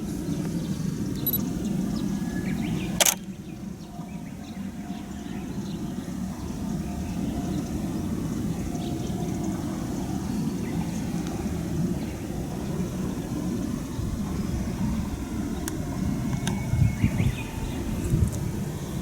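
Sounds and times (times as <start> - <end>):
sharp click: 3.0 - 3.3.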